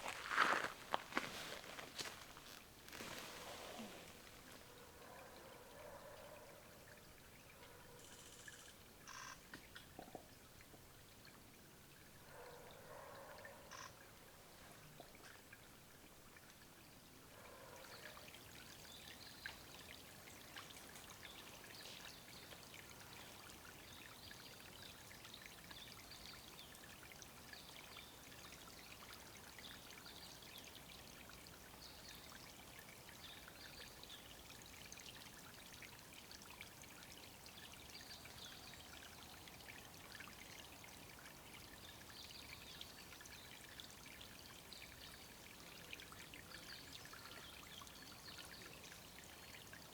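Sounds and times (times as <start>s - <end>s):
trickle of running water: 0.0s - 49.9s.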